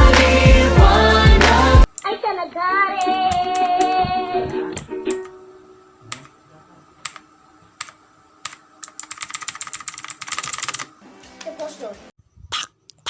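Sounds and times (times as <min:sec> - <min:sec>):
clicky mechanical keyboard typing: 0:07.8 - 0:10.9.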